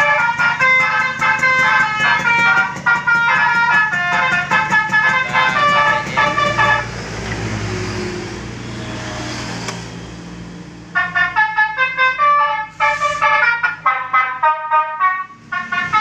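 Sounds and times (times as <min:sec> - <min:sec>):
electronic musical horn tune: 0:00.0 - 0:06.9
motorcycle engine running: 0:00.0 - 0:07.7.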